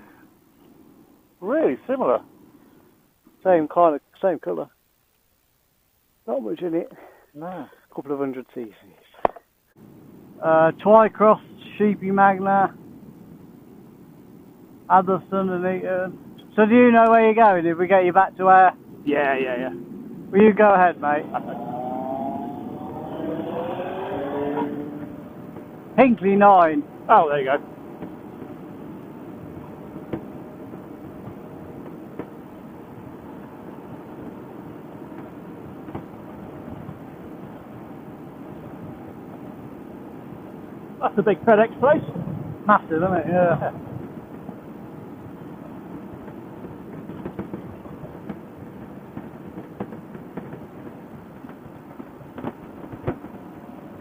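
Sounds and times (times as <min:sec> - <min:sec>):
wind and road noise: 0:08.0 - 0:54.0
motorcycle riding noise: 0:18.7 - 0:40.6.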